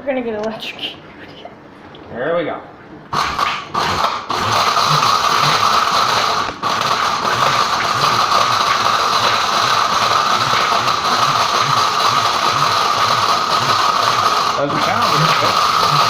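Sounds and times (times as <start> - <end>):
blender with rattling scrap: 3.1 - 16.0.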